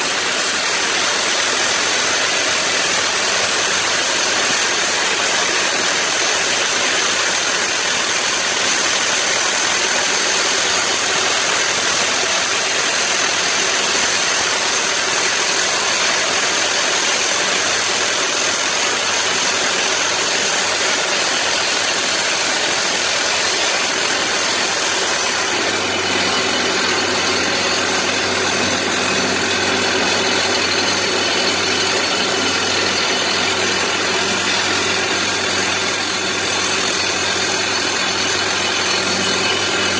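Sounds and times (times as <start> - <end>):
hydraulic drill rig running: 0.0 - 39.9.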